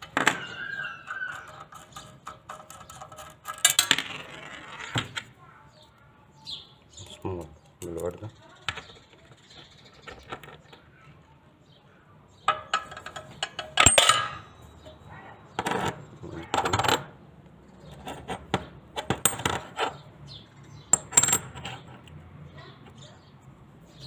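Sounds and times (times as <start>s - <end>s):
small steel parts clinking: 0.0s - 4.3s, 12.5s - 17.1s, 19.0s - 20.0s, 20.6s - 22.2s.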